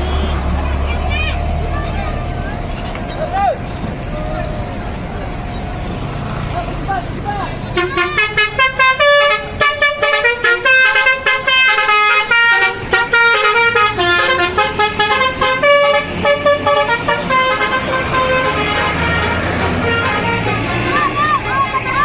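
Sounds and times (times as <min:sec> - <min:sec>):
bus horn playing melody: 0:00.0 - 0:02.4, 0:07.7 - 0:22.0
bus engine running: 0:00.0 - 0:22.0.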